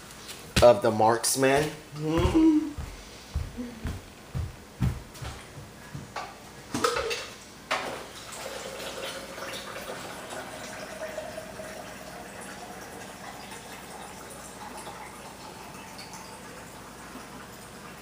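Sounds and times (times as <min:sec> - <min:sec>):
faint hum: 0:00.0 - 0:07.4.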